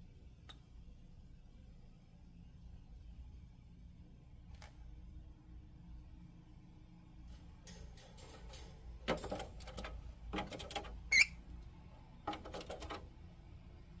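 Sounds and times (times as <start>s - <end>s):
lovebirds clicking and rustling: 8.2s - 11.3s, 12.3s - 13.1s.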